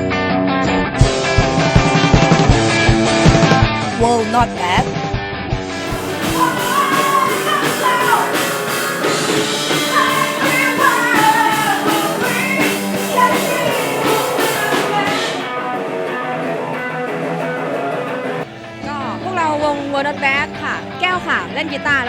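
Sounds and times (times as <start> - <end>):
electric guitar: 0.0 - 22.0
steady drum beat: 1.0 - 18.4
person singing: 5.7 - 19.3.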